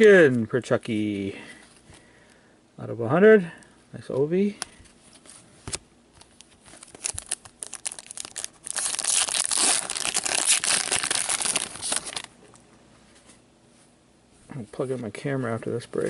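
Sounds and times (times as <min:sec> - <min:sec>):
wrapper crinkling and tearing: 0:06.6 - 0:12.4.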